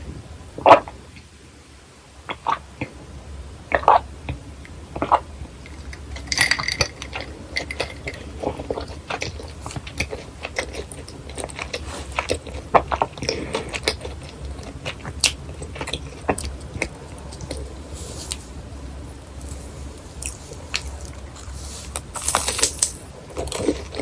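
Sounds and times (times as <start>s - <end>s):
crunchy chewing: 3.7s - 24.0s.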